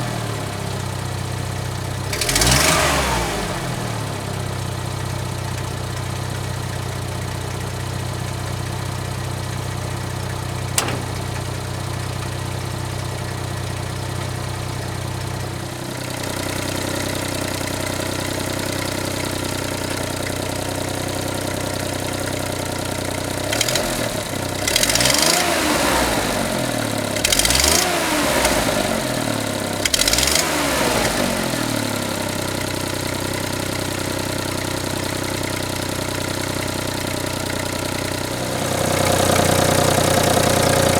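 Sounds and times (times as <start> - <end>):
car engine idling and revving: 0.0 - 40.9
sharp click: 10.8 - 11.8.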